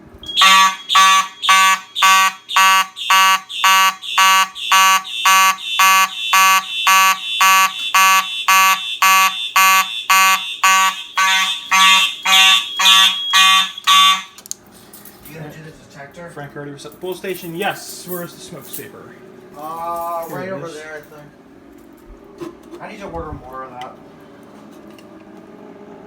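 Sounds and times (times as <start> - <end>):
fire alarm horn blasts: 0.2 - 14.4.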